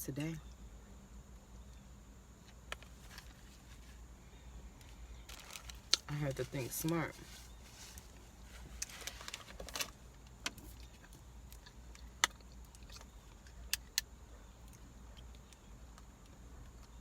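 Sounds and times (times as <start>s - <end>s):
steady low hum: 0.0s - 17.0s
eating clicks and crinkles: 5.3s - 6.1s.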